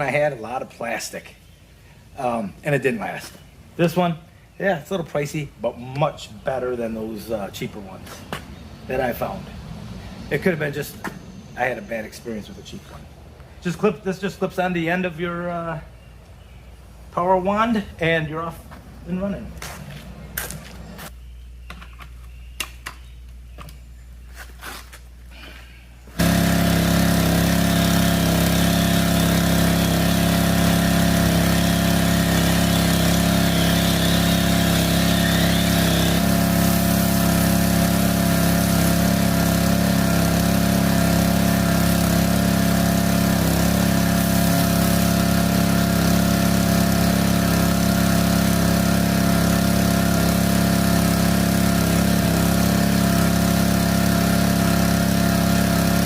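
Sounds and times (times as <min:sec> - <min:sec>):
pressure washer engine running: 0:06.2 - 0:15.8, 0:26.1 - 0:56.0
high spray hiss: 0:31.5 - 0:39.0.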